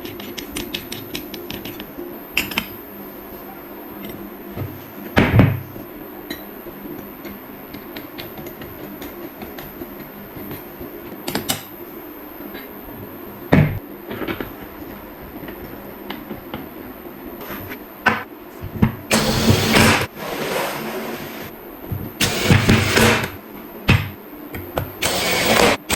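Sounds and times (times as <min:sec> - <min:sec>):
noisy burst: 0:19.1 - 0:21.6, 0:22.2 - 0:23.4, 0:25.0 - 0:25.9
knocks and clicks of tools: 0:22.2 - 0:25.9.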